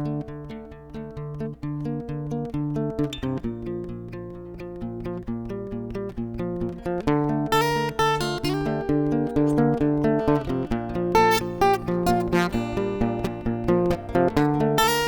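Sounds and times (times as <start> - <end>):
acoustic guitar plucking and strumming: 0.0 - 15.0.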